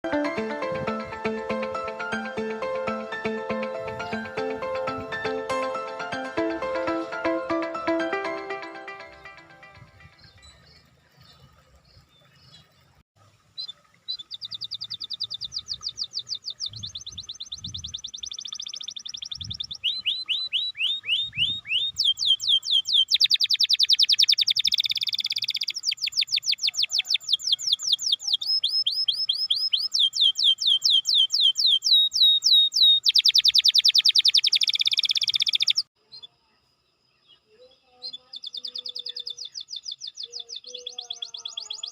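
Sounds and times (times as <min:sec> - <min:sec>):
canary singing trills: 0:13.6 - 0:36.5, 0:37.2 - 0:41.9.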